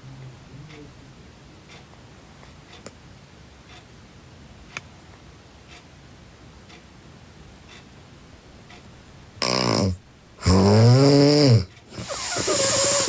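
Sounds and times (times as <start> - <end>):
girl snoring loudly: 9.4 - 13.0
short snort: 12.0 - 13.0.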